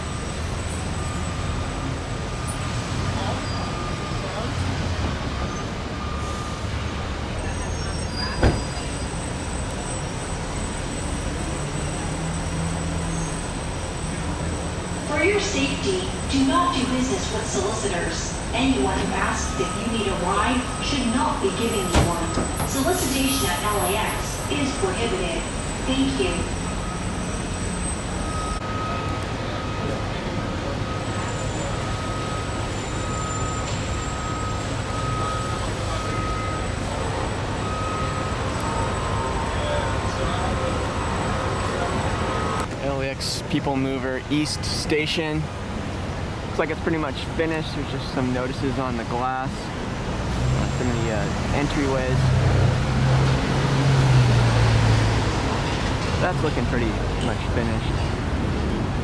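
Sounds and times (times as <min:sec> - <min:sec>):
road and traffic noise: 0:00.0 - 0:59.0
electronic beep: 0:18.7 - 0:24.3.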